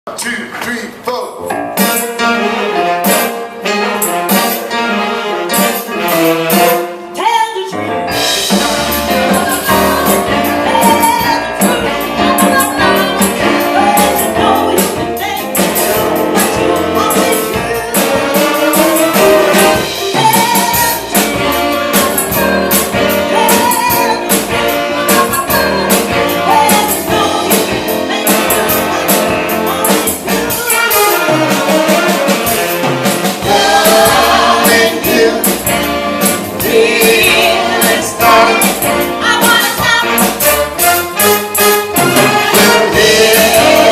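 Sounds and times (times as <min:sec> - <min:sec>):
live band playing: 0:00.9 - 0:43.9
count-in: 0:01.1 - 0:04.8.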